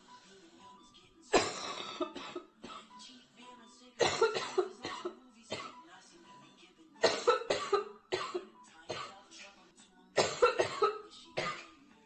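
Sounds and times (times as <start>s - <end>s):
girl coughing: 1.3s - 2.9s, 4.0s - 5.8s, 7.0s - 9.2s, 10.2s - 11.7s.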